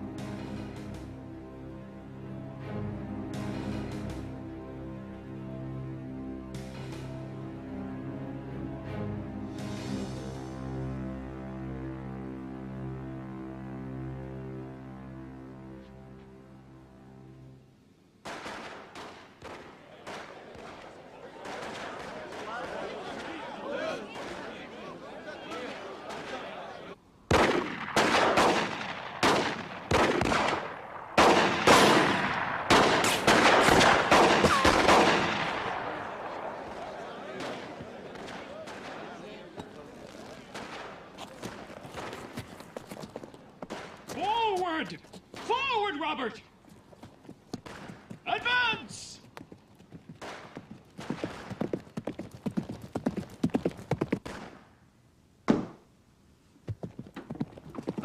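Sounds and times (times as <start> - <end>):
loud sharp crack: 18.2 - 23.4, 27.3 - 36.8, 40.4 - 42.1, 43.7 - 44.2
gunshots with ringing echo: 27.3 - 36.6
horse hooves clip-clopping: 39.6 - 45.4, 46.6 - 48.3, 49.2 - 54.5, 56.6 - 58.0.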